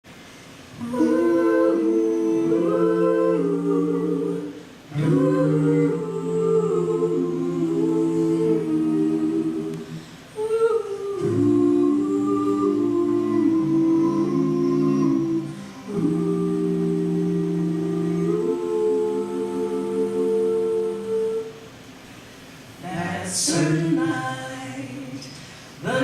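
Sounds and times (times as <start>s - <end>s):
breaths: 0.2s - 0.7s, 9.9s - 10.3s, 25.3s - 25.8s
vocal group humming in harmony: 0.7s - 21.9s, 22.7s - 26.0s.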